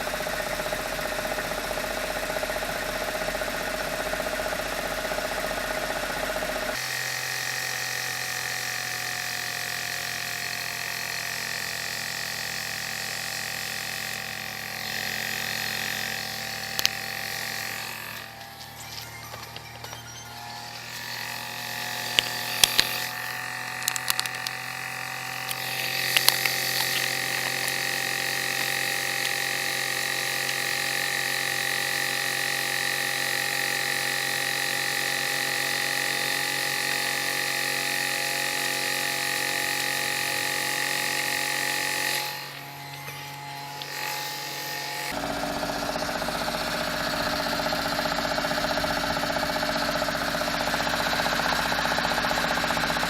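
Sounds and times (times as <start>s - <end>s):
gearbox buzzing rattle: 0.0s - 53.0s
sharp clicks: 14.8s - 30.8s
car engine idling: 45.2s - 53.0s.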